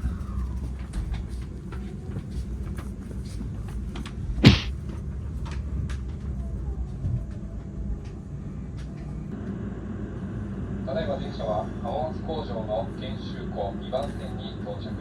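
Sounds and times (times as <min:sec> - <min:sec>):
train rumble from inside: 0:00.0 - 0:15.0
short loud sharp sound: 0:04.4 - 0:04.7.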